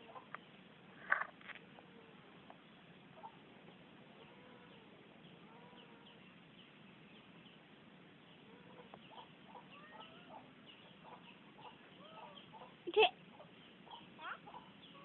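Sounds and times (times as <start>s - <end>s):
chickens clucking: 0.0s - 2.2s, 3.1s - 6.1s, 8.4s - 15.0s.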